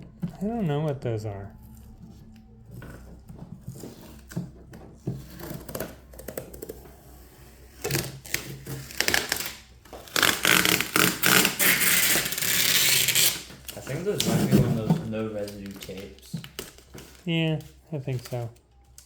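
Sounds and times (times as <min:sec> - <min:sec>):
packaging rustling and ripping: 0:01.5 - 0:19.0.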